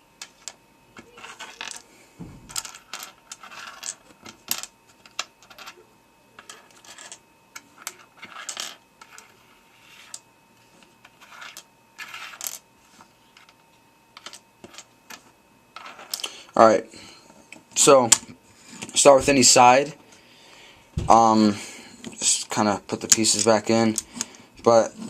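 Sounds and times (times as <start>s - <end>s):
plastic pieces clicking and rattling: 0.2s - 1.8s, 7.8s - 9.4s.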